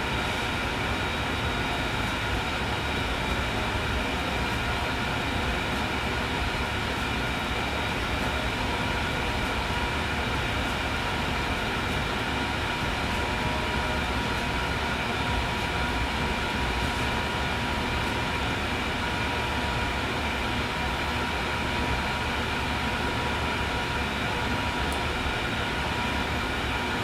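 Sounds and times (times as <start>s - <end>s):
hot air station and fan blowing: 0.0s - 27.0s
thin steady whine: 0.0s - 27.0s.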